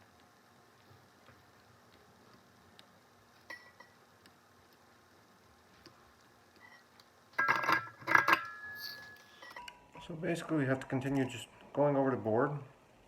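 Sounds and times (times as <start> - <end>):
brief metallic ring: 8.2 - 9.7.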